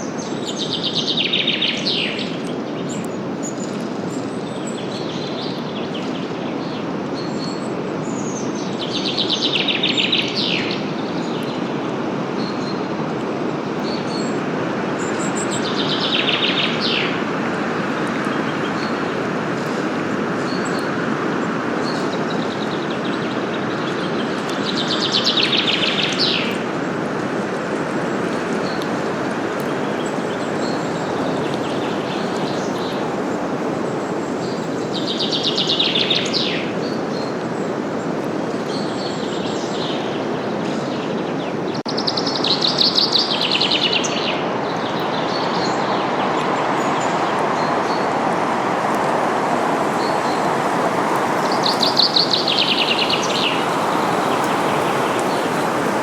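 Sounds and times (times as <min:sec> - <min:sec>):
wind through forest leaves: 0:00.0 - 0:56.0
songbird trilling: 0:51.2 - 0:55.7.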